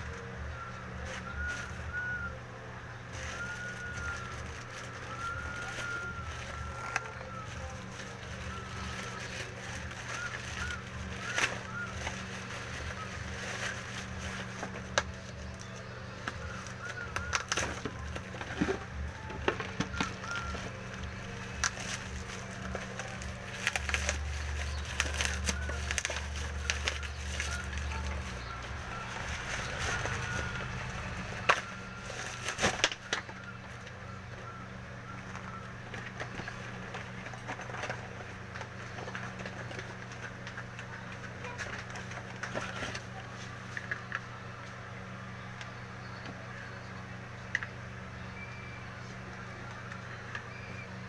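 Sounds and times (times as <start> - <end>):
steady low hum: 0.0 - 51.0
packaging knocking and crackling: 3.1 - 34.0.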